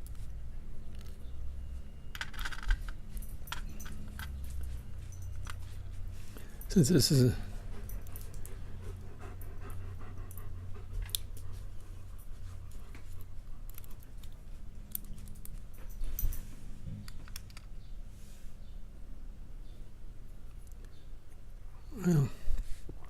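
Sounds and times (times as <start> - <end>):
low steady hum: 0.0 - 23.0
light clicks of padlock parts: 2.1 - 5.7, 12.7 - 16.4, 17.0 - 17.9.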